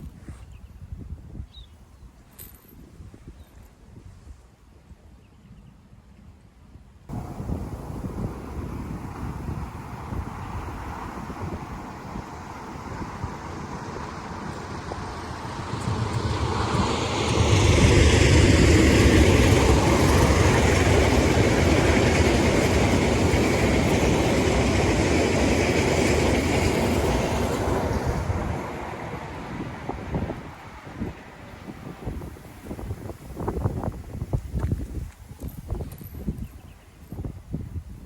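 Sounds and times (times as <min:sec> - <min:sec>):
train passing: 0:07.1 - 0:34.5
wheel-on-rail noise: 0:07.1 - 0:37.2.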